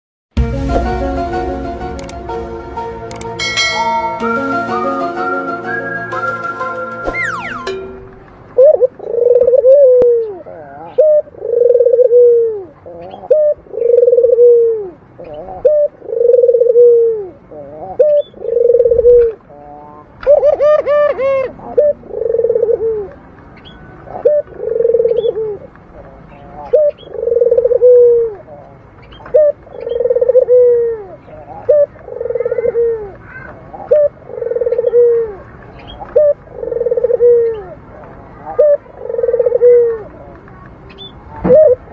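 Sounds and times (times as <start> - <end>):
dove cooing: 8.6 - 23.2, 24.0 - 40.3, 41.4 - 41.9.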